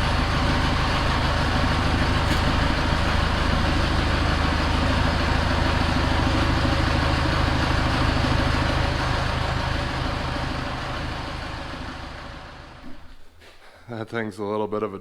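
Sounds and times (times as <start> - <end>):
diesel engine running: 0.0 - 13.5.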